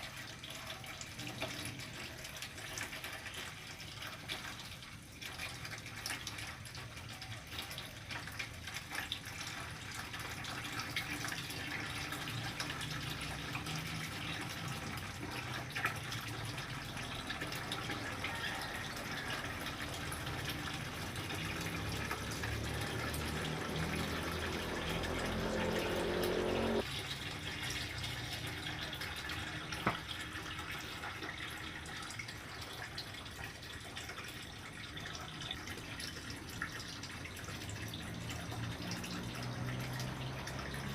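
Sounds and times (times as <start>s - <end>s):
water trickling and splashing: 0.0s - 40.9s
low rising-pitch tone: 20.5s - 26.8s.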